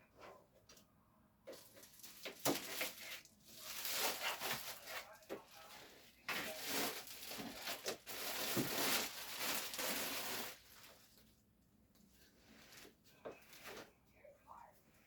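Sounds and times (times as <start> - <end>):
packaging rustling and crinkling: 1.5 - 11.3.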